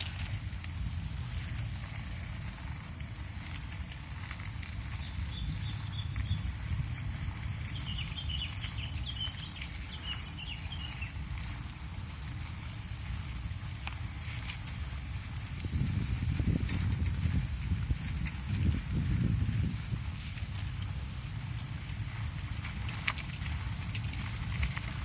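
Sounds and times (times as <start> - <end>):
high insect drone: 0.0 - 25.0
wind and riding noise: 0.0 - 25.0
bird chirping: 7.7 - 11.2.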